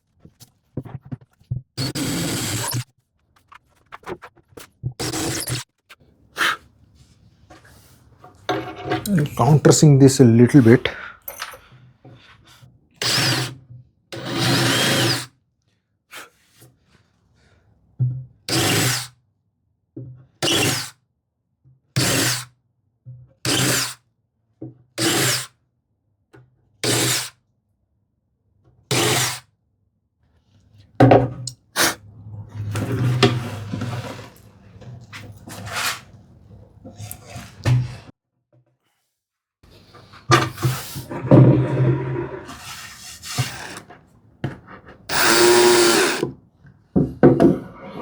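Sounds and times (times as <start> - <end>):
power drill cutting wood: 1.8 - 2.8, 14.2 - 15.2, 45.1 - 46.3.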